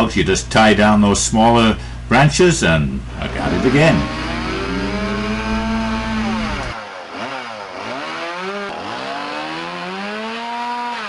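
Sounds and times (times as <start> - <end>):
chainsaw cutting branches: 3.2 - 11.0.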